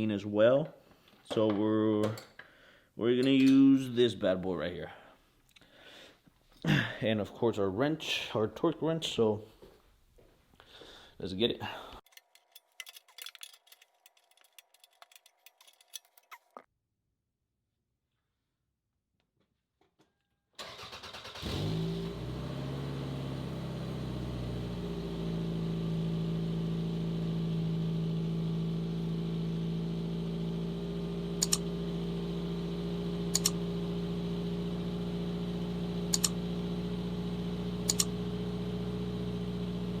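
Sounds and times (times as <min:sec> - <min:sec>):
car engine starting and idling: 0:20.6 - 0:40.0
sharp double clicks: 0:31.4 - 0:31.6, 0:33.3 - 0:33.6, 0:36.1 - 0:36.4, 0:37.9 - 0:38.1.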